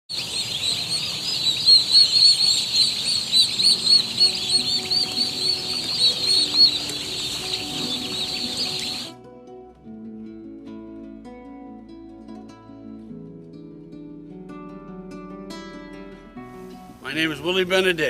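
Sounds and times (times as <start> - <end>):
turkey poults peeping: 0.1 - 9.2.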